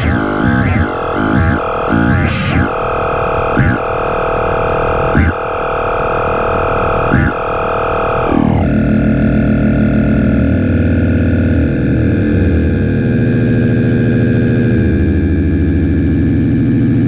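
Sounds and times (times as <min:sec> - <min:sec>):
low pulsing buzz: 0:00.0 - 0:02.8, 0:03.4 - 0:05.5, 0:07.1 - 0:14.3
synthesizer drone: 0:00.0 - 0:17.0.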